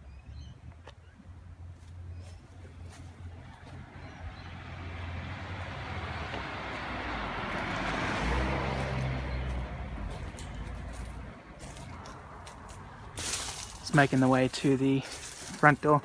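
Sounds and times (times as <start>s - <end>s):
car passing by: 2.9s - 13.8s.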